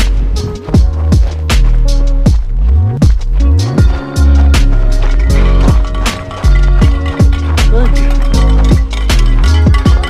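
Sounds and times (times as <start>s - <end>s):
deep bass notes: 0.0s - 10.0s
steady drum beat: 0.0s - 10.0s.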